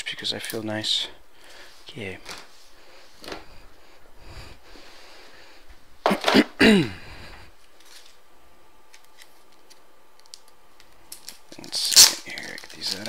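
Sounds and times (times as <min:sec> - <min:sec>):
man clearing his throat: 0:06.0 - 0:07.0.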